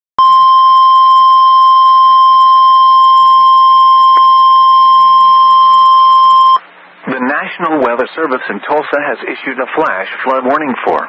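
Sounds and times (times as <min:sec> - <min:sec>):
loud steady alarm tone: 0:00.2 - 0:06.6.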